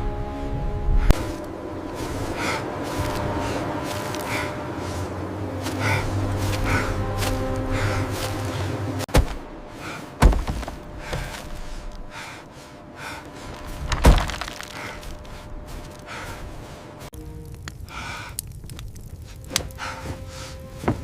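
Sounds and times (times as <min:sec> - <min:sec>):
heavy thuds: 0:05.6 - 0:12.3.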